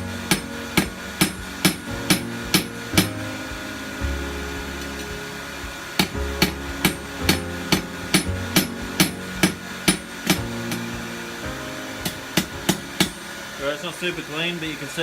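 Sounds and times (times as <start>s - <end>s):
steady low hum: 0.0s - 15.0s
hammer striking steel on anvil: 0.3s - 3.1s.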